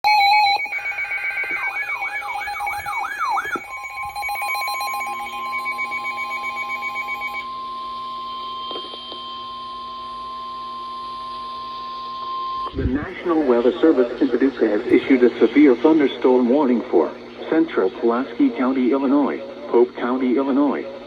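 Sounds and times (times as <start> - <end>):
pulsing electronic tones: 0.0 - 7.5
warbling alarm tone: 0.0 - 15.4
steady warning tone: 0.0 - 21.0.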